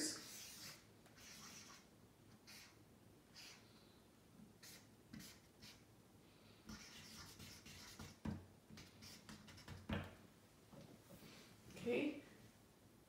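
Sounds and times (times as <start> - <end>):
pen scratching on paper: 0.2 - 3.6, 4.6 - 5.8, 6.7 - 9.9.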